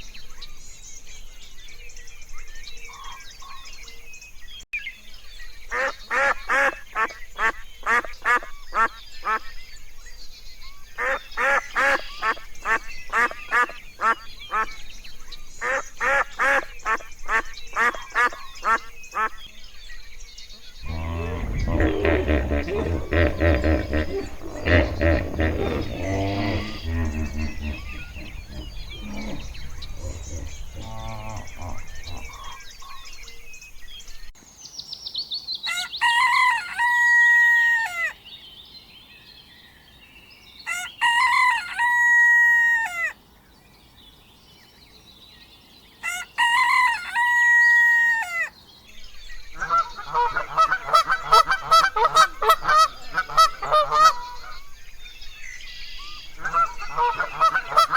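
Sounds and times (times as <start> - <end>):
waterfowl honking: 5.7 - 9.4, 11.0 - 14.8, 15.6 - 19.4, 20.8 - 33.2, 49.5 - 54.8, 56.1 - 57.9
rooster crowing: 20.8 - 32.5, 35.9 - 38.1, 40.7 - 43.1, 46.0 - 48.5
low animal sounds: 20.8 - 34.3, 49.5 - 57.9.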